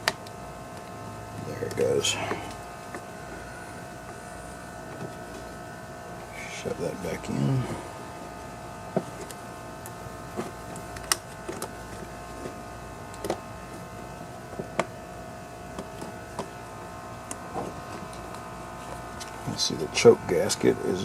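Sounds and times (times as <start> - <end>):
steady background hum: 0.0 - 21.0.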